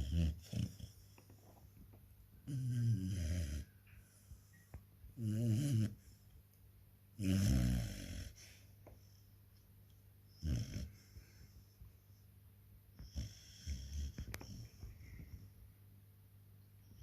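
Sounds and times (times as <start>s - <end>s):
puppy snoring: 0.0s - 1.3s, 2.4s - 4.2s, 5.2s - 6.3s, 7.2s - 8.6s, 10.3s - 11.2s, 13.0s - 14.9s.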